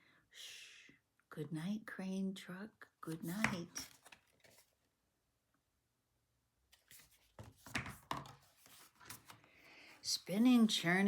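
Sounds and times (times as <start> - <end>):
book pages rustling: 3.1 - 4.8, 6.7 - 9.7.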